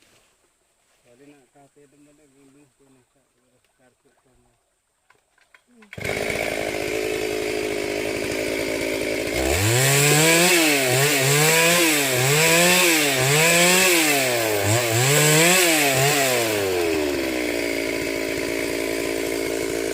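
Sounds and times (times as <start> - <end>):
chainsaw revving and idling: 5.8 - 19.9.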